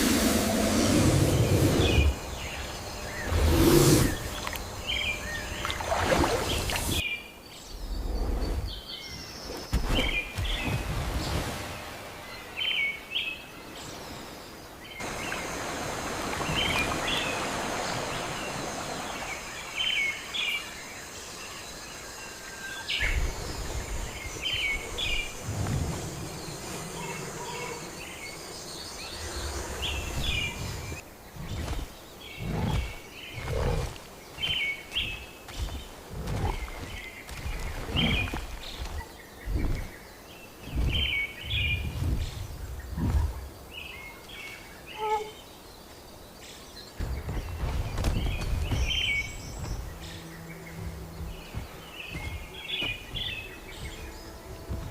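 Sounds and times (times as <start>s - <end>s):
birds chirping: 0.0s - 54.9s
steady background hiss: 11.2s - 36.1s
low rumbles: 47.0s - 54.9s.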